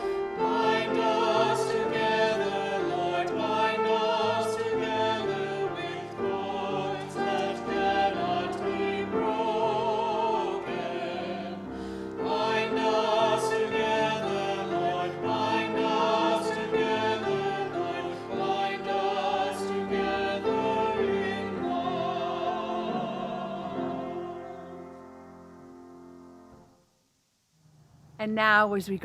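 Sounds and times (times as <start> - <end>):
instrumental accompaniment: 0.0 - 26.8.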